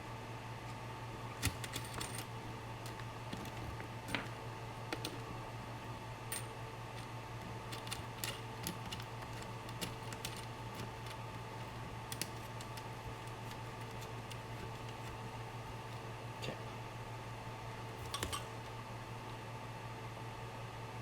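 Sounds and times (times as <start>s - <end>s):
low electrical hum: 0.0s - 21.0s
small items clicking on workbench: 7.7s - 16.0s, 18.0s - 18.7s.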